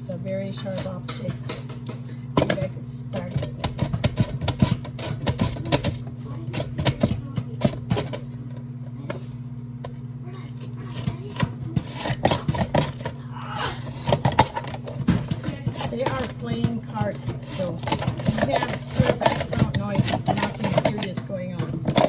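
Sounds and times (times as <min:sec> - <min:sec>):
knife slicing vegetables: 0:10.9 - 0:13.1.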